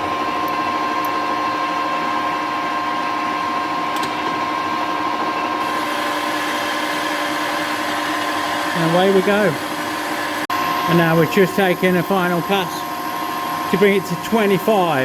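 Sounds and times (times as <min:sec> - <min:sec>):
metal lathe whining: 0:05.6 - 0:15.0.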